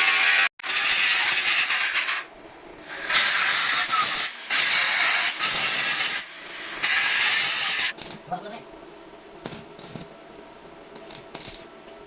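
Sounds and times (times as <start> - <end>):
loud hissing bursts: 0.7 - 8.0.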